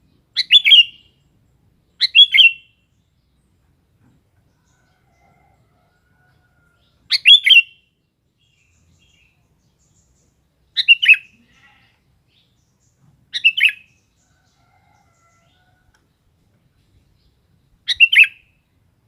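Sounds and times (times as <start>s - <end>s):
bulbul calling: 0.2s - 1.2s, 2.0s - 2.8s, 7.1s - 7.9s, 10.7s - 11.4s, 13.3s - 14.0s, 17.8s - 18.6s.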